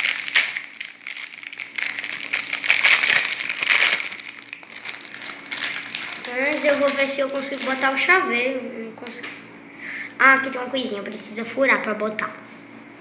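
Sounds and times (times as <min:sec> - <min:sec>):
plastic packaging crinkling: 0:00.0 - 0:08.1.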